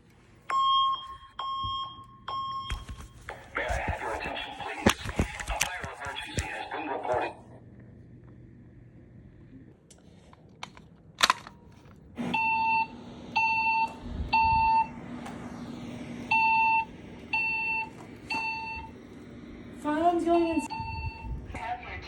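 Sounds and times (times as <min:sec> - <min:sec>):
faint steady hum: 0:00.0 - 0:22.0
evacuation alarm beeps: 0:00.5 - 0:03.2, 0:12.2 - 0:15.0, 0:16.2 - 0:19.2, 0:19.8 - 0:21.6.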